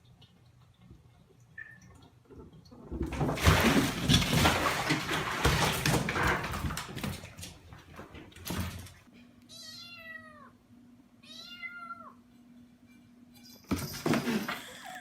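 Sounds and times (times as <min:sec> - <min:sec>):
water splashing and rushing: 0:03.2 - 0:07.0.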